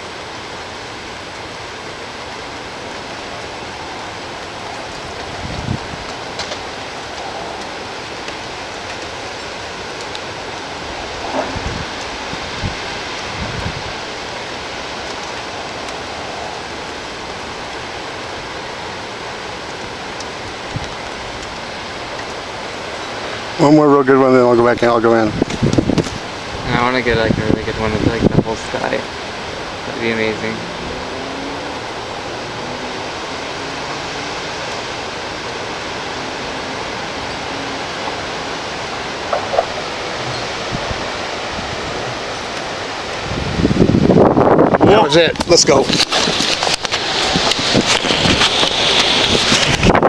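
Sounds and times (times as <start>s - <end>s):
steady rain falling: 0.0s - 50.0s.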